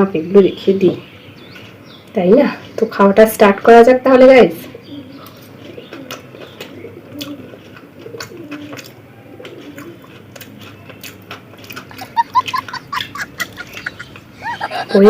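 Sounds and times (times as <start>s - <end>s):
pigeons cooing: 4.7s - 15.0s
soft eating clicks: 5.2s - 14.6s.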